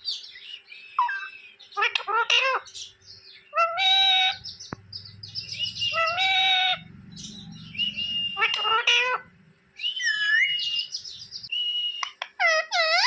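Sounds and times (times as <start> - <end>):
parrot chirping: 0.4 - 13.0
parrot squawking: 1.0 - 2.8, 3.5 - 9.3, 12.2 - 13.0.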